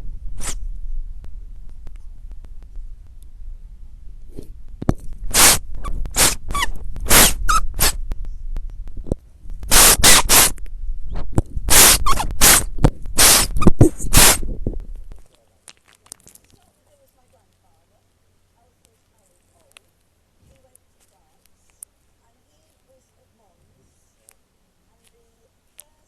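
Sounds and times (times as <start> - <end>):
harsh static noise blasts: 0.0 - 15.3.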